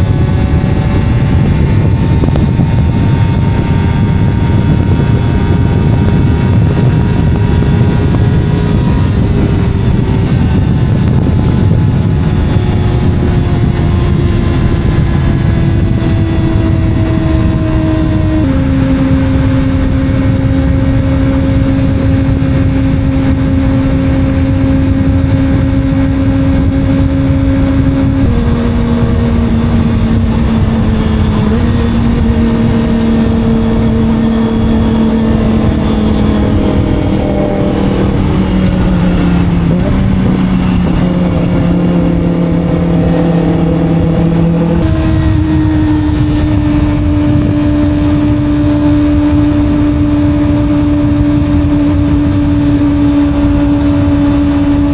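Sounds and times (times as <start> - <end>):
motorcycle engine running: 0.0 - 54.9
wind rushing over microphone: 0.0 - 54.9.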